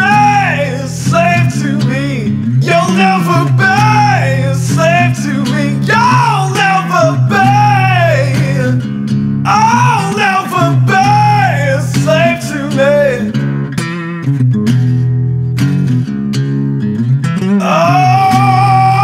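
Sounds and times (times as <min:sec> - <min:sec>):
person singing: 0:00.0 - 0:08.8, 0:09.5 - 0:13.4, 0:17.6 - 0:19.0
electric guitar and bass: 0:00.0 - 0:19.0.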